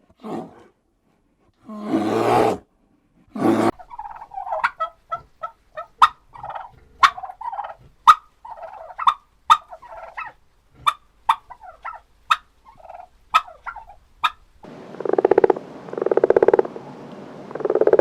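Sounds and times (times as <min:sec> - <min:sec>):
turkeys gobbling: 0:03.7 - 0:16.7.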